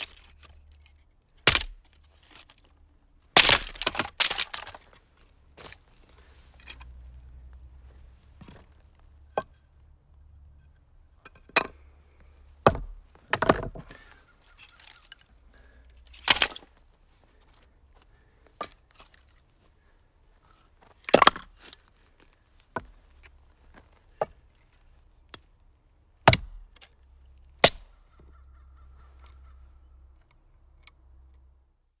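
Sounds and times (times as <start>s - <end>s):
wood splitting cracks: 0.0s - 6.9s, 12.6s - 16.8s, 21.0s - 21.8s, 26.2s - 26.9s, 27.6s - 28.0s
axe chopping firewood: 1.5s - 2.5s, 3.4s - 4.9s, 12.6s - 14.0s, 16.1s - 16.7s, 21.0s - 21.6s, 26.2s - 26.9s, 27.6s - 28.0s.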